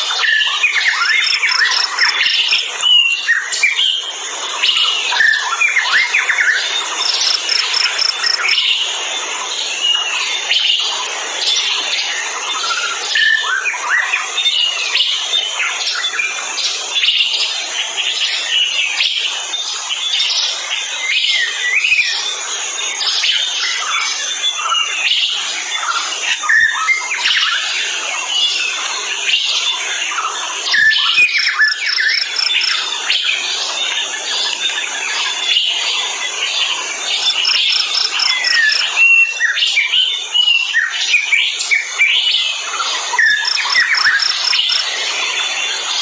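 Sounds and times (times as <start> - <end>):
birds chirping and whistling: 0.0 - 8.9, 23.0 - 46.0
high repeated bird notes: 7.0 - 8.6, 31.2 - 32.9, 37.3 - 39.2.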